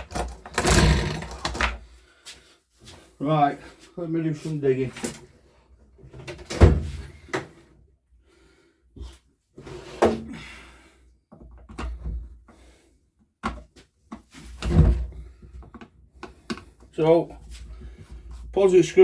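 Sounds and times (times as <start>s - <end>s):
tools knocking and clunking: 13.4s - 16.7s.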